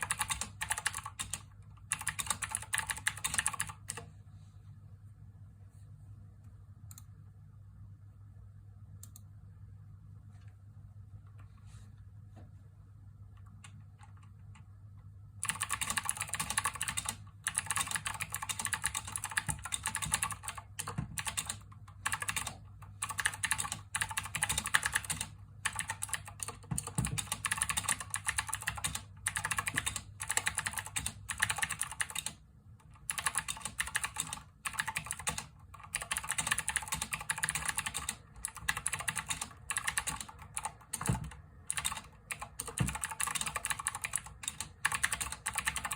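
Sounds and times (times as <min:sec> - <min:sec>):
mechanical keyboard typing clicks: 0:00.0 - 0:04.1, 0:15.4 - 0:45.9.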